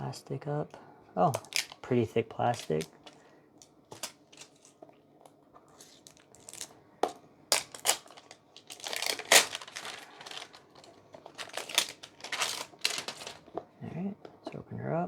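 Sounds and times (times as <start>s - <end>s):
plastic packaging crinkling: 1.4s - 3.3s, 3.9s - 4.8s, 5.7s - 6.8s, 7.5s - 13.6s.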